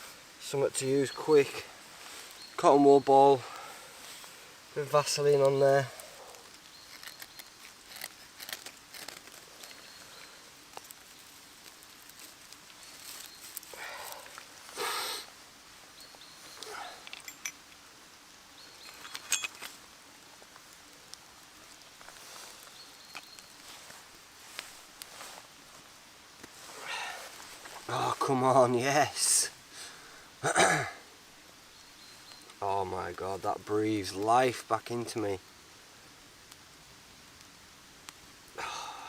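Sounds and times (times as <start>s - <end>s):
rustling and handling: 4.0s - 14.8s, 18.8s - 19.8s, 20.4s - 28.3s.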